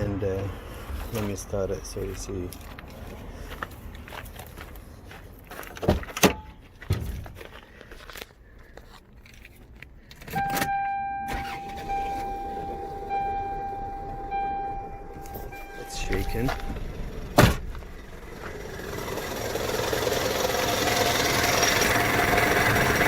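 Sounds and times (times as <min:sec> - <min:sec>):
car engine starting and running: 0:10.2 - 0:23.0
steady high-pitched tone: 0:10.4 - 0:17.2.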